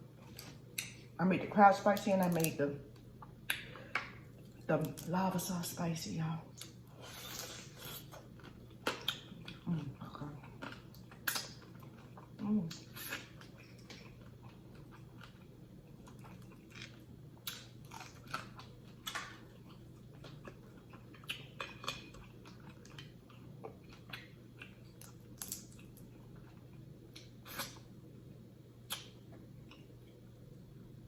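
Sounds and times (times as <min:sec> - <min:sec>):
chewing with shell crunches: 0:06.6 - 0:27.9.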